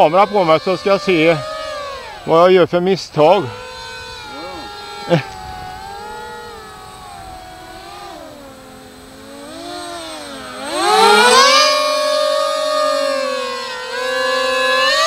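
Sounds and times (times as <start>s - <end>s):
air-raid siren wail: 0.0s - 2.3s, 10.5s - 15.0s
electric motors and propellers whining: 0.0s - 15.0s.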